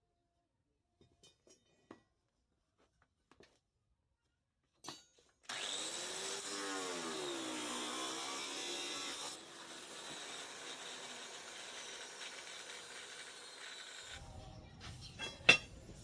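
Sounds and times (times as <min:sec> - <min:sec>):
electric power tool running: 0:05.5 - 0:14.2.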